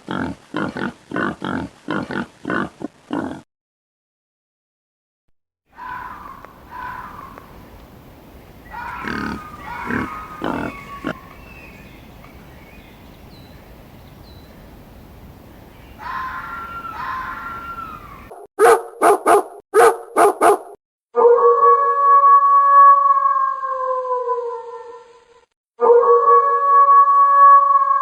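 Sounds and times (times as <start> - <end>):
dog barking: 8.7 - 11.2, 18.6 - 20.8
dog whining: 8.7 - 11.2.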